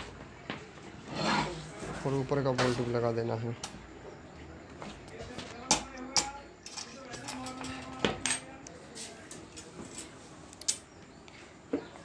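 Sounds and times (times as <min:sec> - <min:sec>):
metal parts clinking and knocking: 0:05.7 - 0:08.5.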